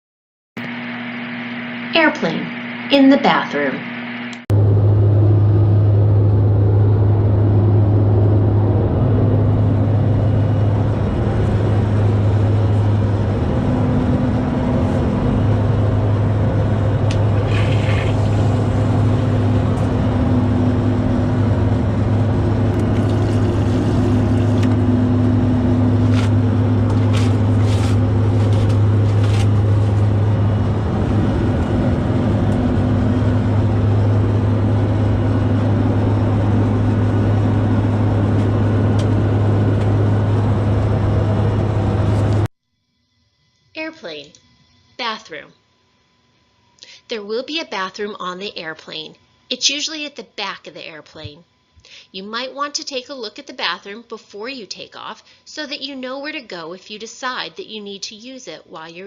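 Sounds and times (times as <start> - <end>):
airplane cabin drone: 0.6 - 42.5.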